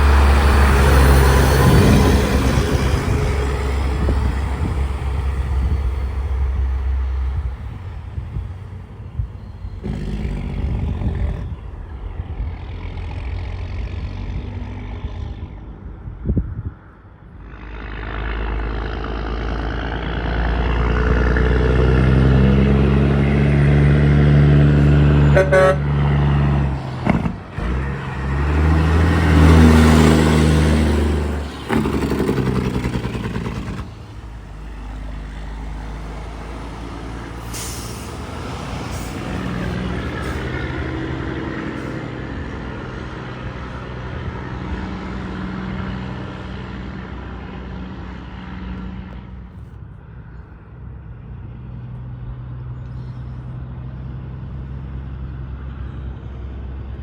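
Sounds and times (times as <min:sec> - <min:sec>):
heavy trucks passing: 0:00.0 - 0:57.0
sharp air hiss: 0:37.4 - 0:39.4.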